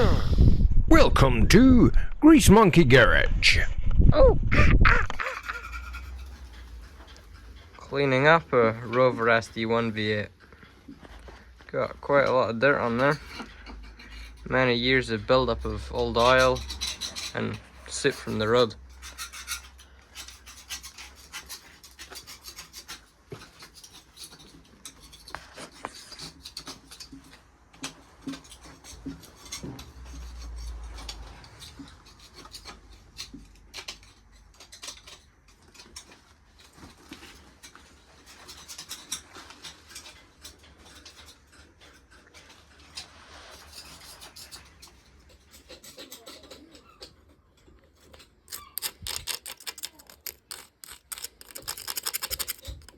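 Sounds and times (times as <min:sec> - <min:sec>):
hand scraping and scrubbing engine: 0:04.9 - 0:34.6, 0:48.2 - 0:52.9.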